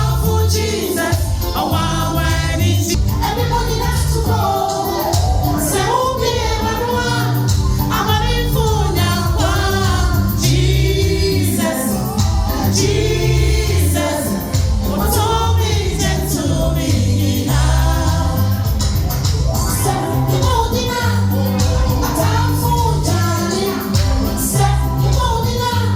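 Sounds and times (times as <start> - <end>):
band accompaniment with bass: 0.0 - 25.9
voices singing gospel song: 0.0 - 25.9.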